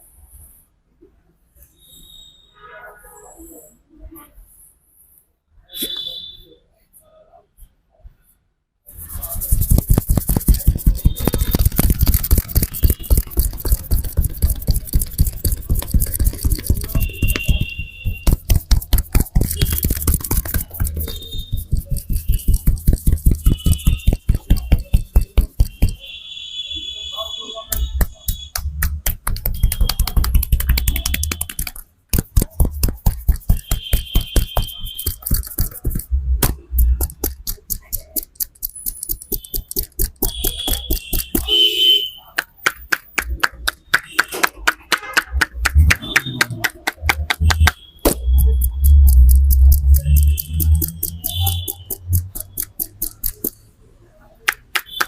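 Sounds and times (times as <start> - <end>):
hands slapping on a head: 9.0 - 26.0, 27.7 - 41.6, 42.4 - 53.6, 54.4 - 55.0.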